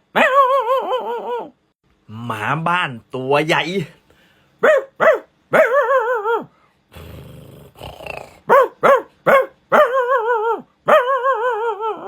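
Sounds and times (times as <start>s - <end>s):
person imitating dog growl: 6.2s - 8.5s.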